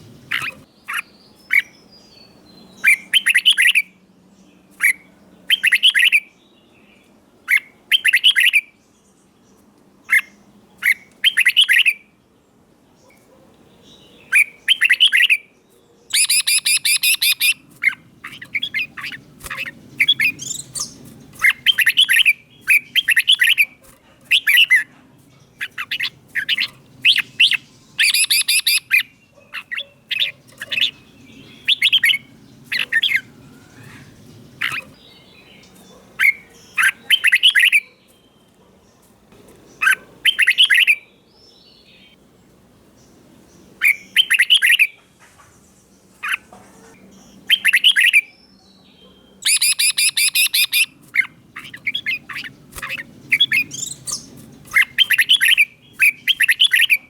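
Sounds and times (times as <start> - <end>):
harsh rapid bird chattering: 0.2 - 1.7, 16.1 - 35.0, 35.6 - 38.0, 39.8 - 41.0, 49.4 - 57.0
bird singing whistled phrases: 5.5 - 6.3, 14.3 - 15.4, 16.1 - 17.6, 25.6 - 29.1, 31.5 - 32.2, 36.2 - 38.4, 40.3 - 41.1, 43.9 - 45.0, 49.1 - 50.9, 51.6 - 57.0.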